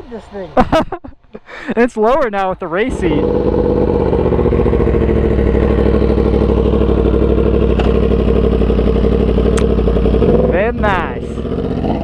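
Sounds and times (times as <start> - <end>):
motorcycle engine idling: 2.9 - 12.0.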